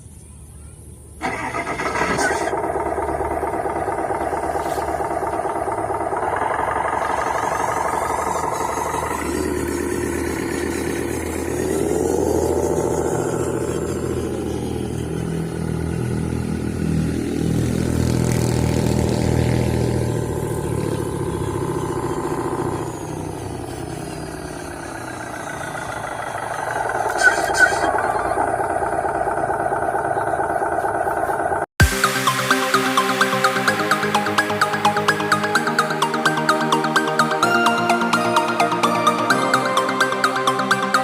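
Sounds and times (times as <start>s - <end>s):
model truck motor whine: 0.8s - 31.7s.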